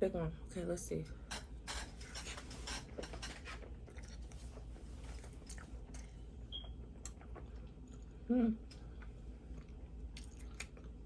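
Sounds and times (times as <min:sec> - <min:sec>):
person chewing food: 0:03.4 - 0:11.0.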